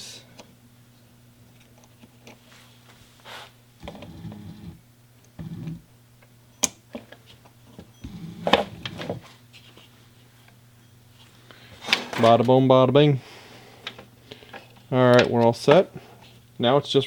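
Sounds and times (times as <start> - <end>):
steady low hum: 0.0 - 17.0
handling noises: 6.9 - 12.7.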